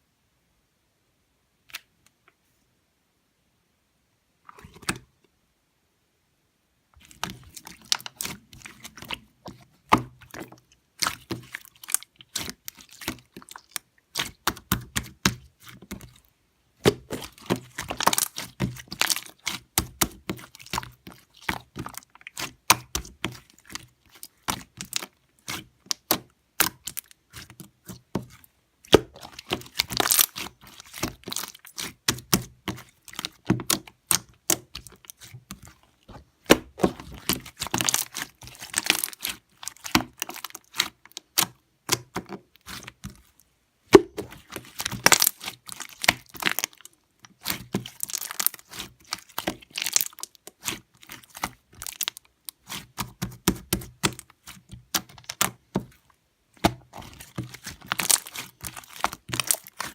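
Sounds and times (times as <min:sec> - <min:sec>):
crackling handling noise: 0:32.5 - 0:53.0, 0:54.1 - 0:59.9.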